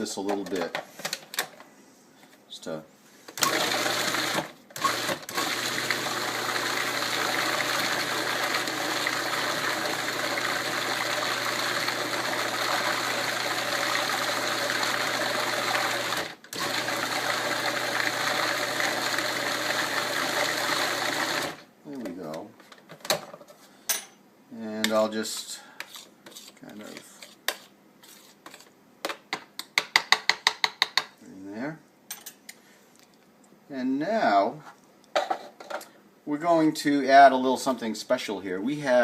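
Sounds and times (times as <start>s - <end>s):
blender motor running: 3.4s - 21.6s.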